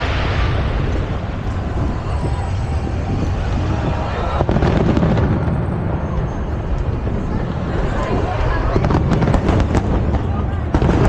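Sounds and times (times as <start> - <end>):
sharp firework bang: 0.0 - 6.2
crowd murmur: 0.0 - 11.0
wind rumbling on microphone: 0.0 - 11.0.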